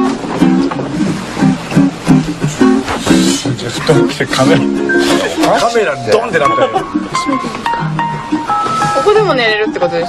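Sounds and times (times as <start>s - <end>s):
bouncy plucked-string tune: 0.0s - 10.0s.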